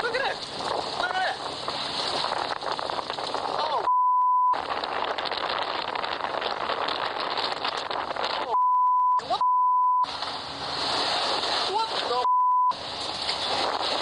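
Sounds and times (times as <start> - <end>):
wind and rain rushing: 0.0 - 9.4, 10.0 - 14.0
censor bleeps: 3.9 - 4.6, 8.6 - 10.1, 12.2 - 12.8.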